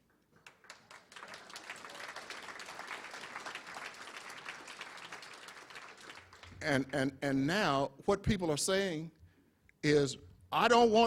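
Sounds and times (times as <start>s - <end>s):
audience applauding: 0.3s - 6.9s.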